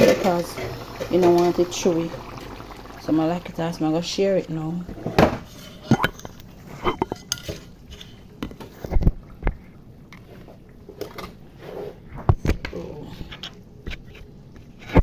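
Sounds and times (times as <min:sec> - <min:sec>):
utensil scraping pots: 0:00.0 - 0:08.2.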